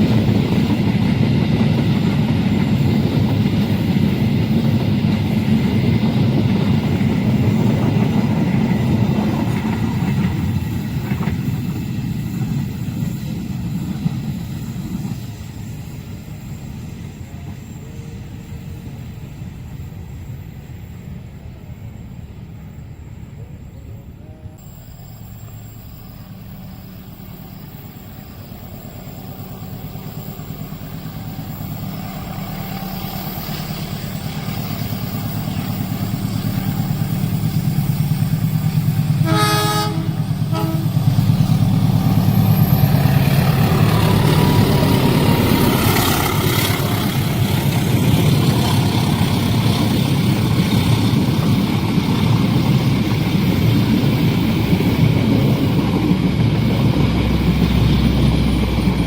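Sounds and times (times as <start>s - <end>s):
train rumbling on rails: 0.0s - 59.0s
train horn blast: 39.2s - 41.3s.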